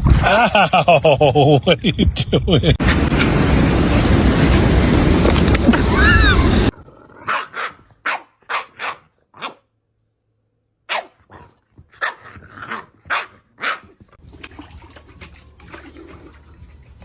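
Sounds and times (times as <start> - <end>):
dog barking: 7.2 - 9.7, 10.9 - 13.9.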